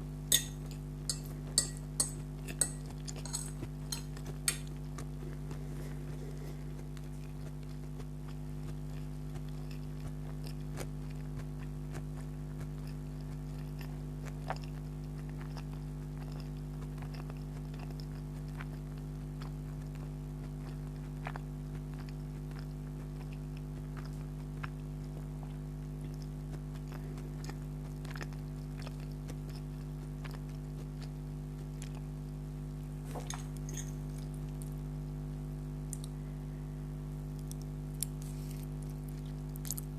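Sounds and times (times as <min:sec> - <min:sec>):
low electrical hum: 0:00.0 - 0:39.9
person chewing food: 0:00.3 - 0:32.1, 0:33.0 - 0:34.8, 0:37.4 - 0:39.9
soft mouth clicks: 0:35.9 - 0:36.2.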